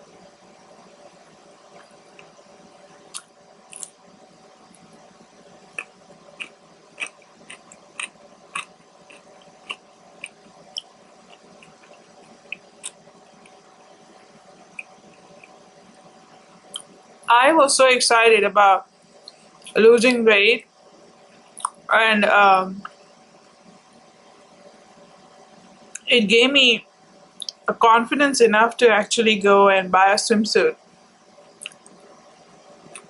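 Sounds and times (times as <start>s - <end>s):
person chewing food: 3.1s - 4.0s, 5.7s - 13.6s, 14.7s - 15.6s
wet mouth clicks and smacks: 21.6s - 21.8s, 31.6s - 32.0s.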